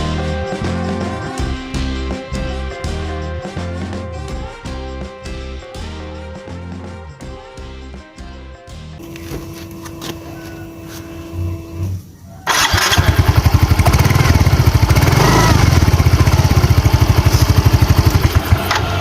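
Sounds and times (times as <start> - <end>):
motorbike engine running: 12.5 - 19.0.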